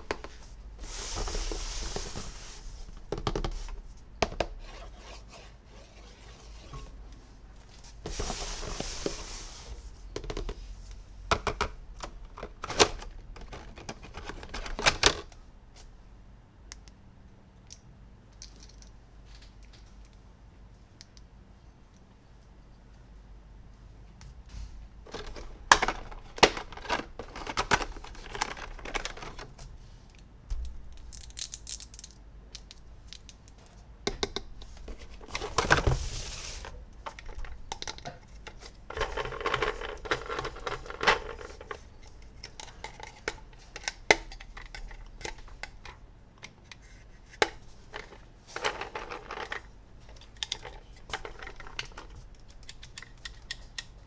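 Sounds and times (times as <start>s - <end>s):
packaging rustling: 25.1s - 29.6s
plastic toy parts clicking: 30.9s - 33.6s, 48.7s - 54.0s.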